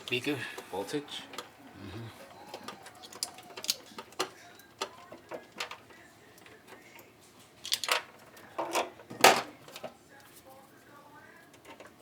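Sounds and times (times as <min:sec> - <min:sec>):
tools and metal parts clicking: 0:02.6 - 0:06.8, 0:07.6 - 0:08.9.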